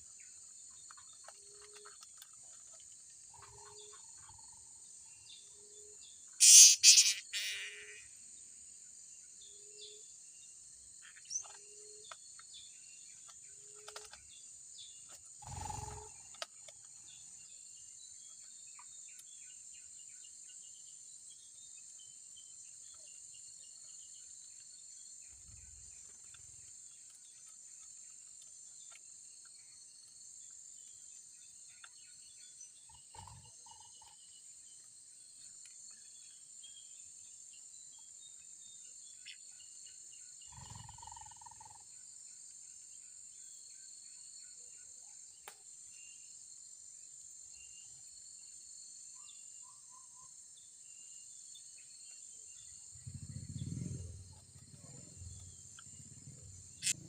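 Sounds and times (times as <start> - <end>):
faint chirps: 0.0 - 57.0
high insect buzzing: 6.4 - 8.1
shrill bird calls: 6.4 - 8.2.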